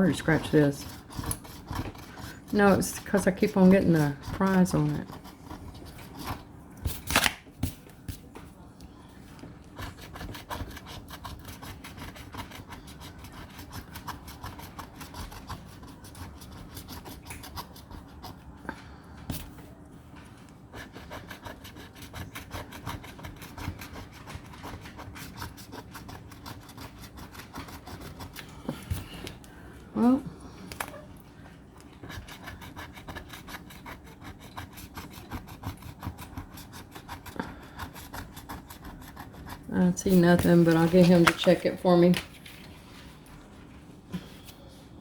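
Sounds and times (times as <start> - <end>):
scratch-off ticket being scraped: 0.1 - 7.2, 32.2 - 42.3.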